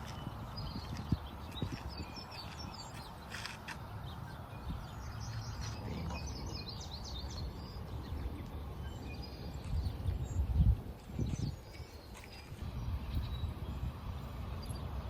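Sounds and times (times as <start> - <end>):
low outdoor rumble: 0.0 - 15.0
small birds chirping: 0.0 - 15.0.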